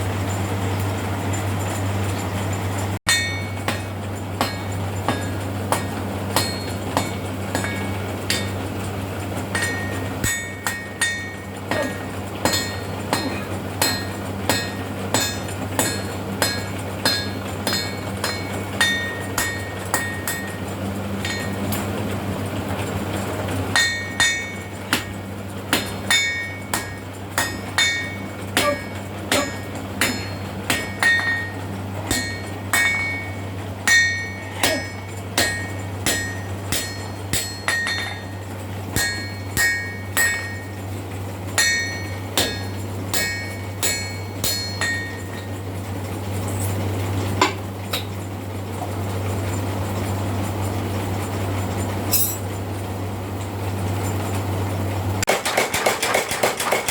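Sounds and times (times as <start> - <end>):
hammer striking steel on anvil: 3.1 - 8.6, 9.5 - 20.6, 21.2 - 21.8, 23.7 - 40.8, 41.6 - 45.5, 52.1 - 52.4, 55.2 - 56.9.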